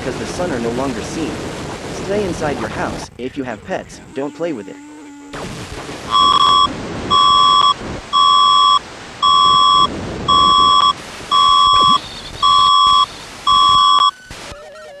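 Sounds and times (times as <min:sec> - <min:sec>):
electronic alert beeps: 0:06.1 - 0:14.2.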